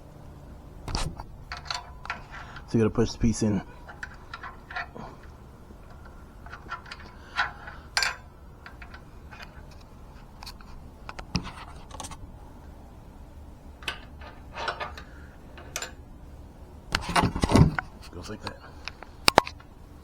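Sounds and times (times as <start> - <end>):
metal parts clicking and scraping: 0.9 - 12.2, 13.8 - 16.0.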